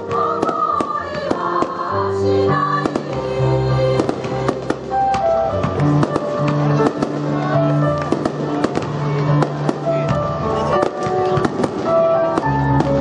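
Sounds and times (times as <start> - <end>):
choral music with held chords: 0.0 - 8.6
fireworks cracking: 0.0 - 13.0.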